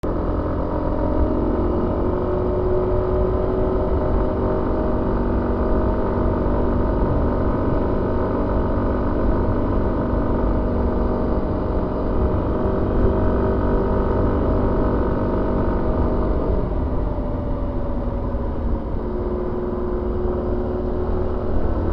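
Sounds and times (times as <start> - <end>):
wind and road noise: 0.0 - 21.9
scooter engine running: 0.1 - 21.9.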